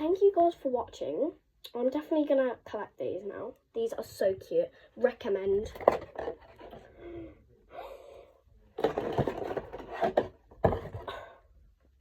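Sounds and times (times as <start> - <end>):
breathing: 4.7 - 5.0, 6.8 - 8.5
rubbing and rustling: 5.0 - 7.0, 8.8 - 11.2.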